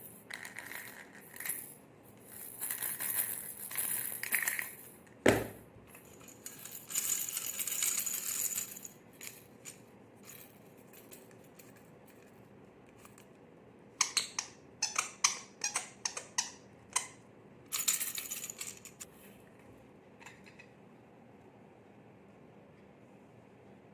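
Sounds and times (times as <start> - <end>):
baby rattle toys shaken: 6.0 - 11.8.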